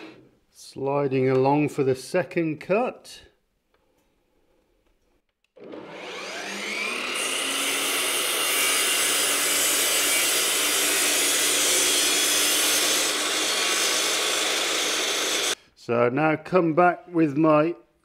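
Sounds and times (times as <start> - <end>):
mitre saw motor whining: 5.6 - 15.6
saw cutting a board: 5.6 - 15.6.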